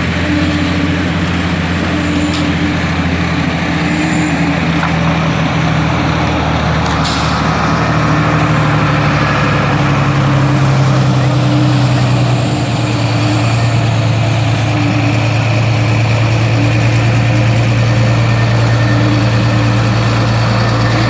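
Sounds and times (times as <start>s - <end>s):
heavy diesel engine running: 0.0s - 21.0s
air hiss burst: 7.0s - 14.8s.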